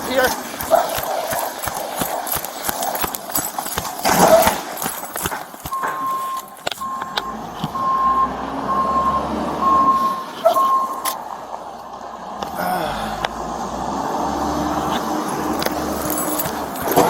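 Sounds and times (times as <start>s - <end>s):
knocks and rustling: 0.3s - 6.9s, 14.9s - 17.0s
reversing alarm beeping: 5.7s - 11.2s.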